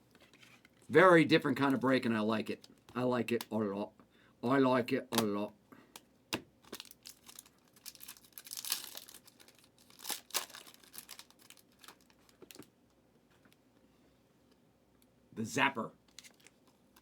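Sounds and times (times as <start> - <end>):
card pack wrappers crinkling: 6.6 - 12.7, 16.1 - 17.0.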